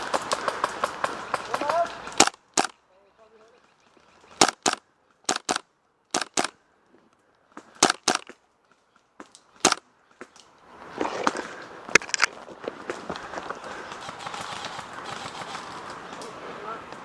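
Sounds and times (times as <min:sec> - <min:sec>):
rustle of movement: 0:00.0 - 0:17.0
airsoft rifle shots: 0:00.1 - 0:02.8, 0:04.4 - 0:06.6, 0:07.8 - 0:08.4, 0:09.6 - 0:09.8.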